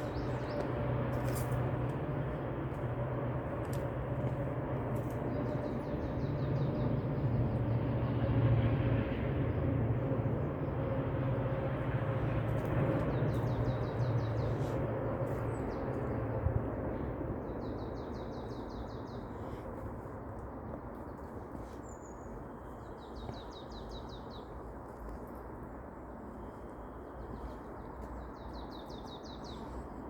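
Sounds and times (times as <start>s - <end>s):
distant passing vehicles rumble: 0.0s - 21.0s.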